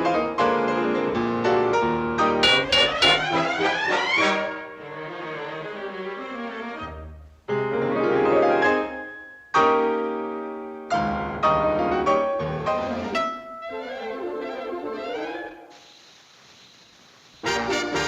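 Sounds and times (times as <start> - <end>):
piano chords: 2.4 - 3.6.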